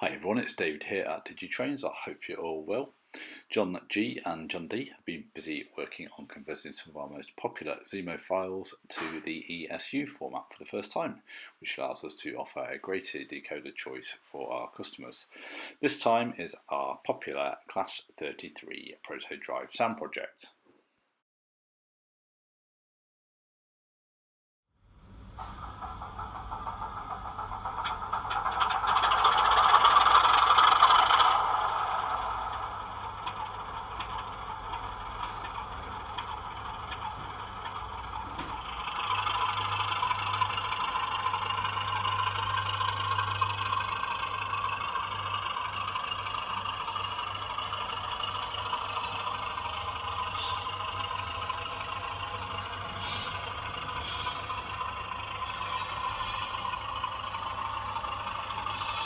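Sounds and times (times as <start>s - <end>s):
diesel locomotive engine: 0.0s - 9.6s, 11.2s - 15.9s, 24.8s - 59.0s.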